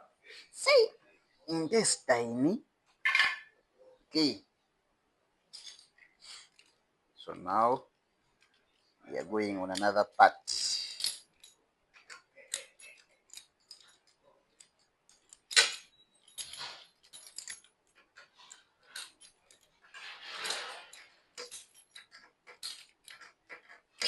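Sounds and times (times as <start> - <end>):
metal parts clicking and clinking: 5.5 - 6.8, 9.6 - 24.0.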